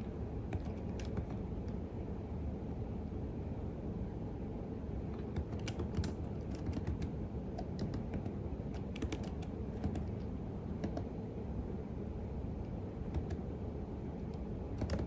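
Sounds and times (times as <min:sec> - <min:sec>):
keyboard typing: 0:00.5 - 0:01.5, 0:05.2 - 0:11.1, 0:13.0 - 0:13.5, 0:14.3 - 0:15.0.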